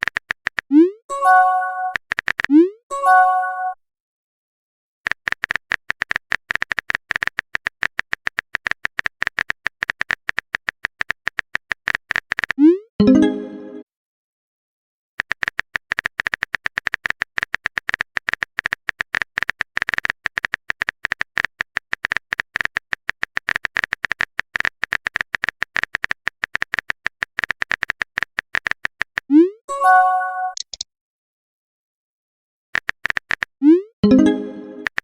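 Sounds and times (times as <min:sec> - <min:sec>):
keyboard tapping clicks: 0:00.0 - 0:00.9, 0:01.9 - 0:02.7, 0:05.1 - 0:12.6, 0:15.2 - 0:29.3, 0:30.5 - 0:30.8, 0:32.8 - 0:35.0.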